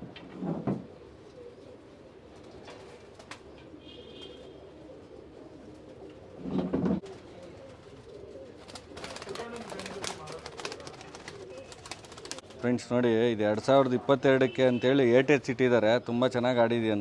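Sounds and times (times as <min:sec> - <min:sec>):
pigeons cooing: 0:00.6 - 0:12.6.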